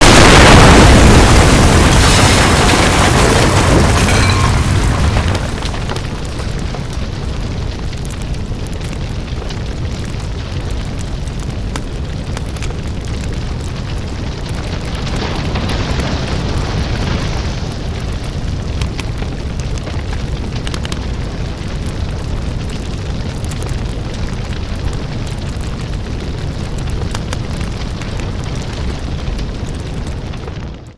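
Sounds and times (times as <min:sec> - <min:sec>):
explosion blast: 0:00.0 - 0:08.1
crackles and debris pops: 0:00.0 - 0:30.9
fire rumbling: 0:00.0 - 0:30.9.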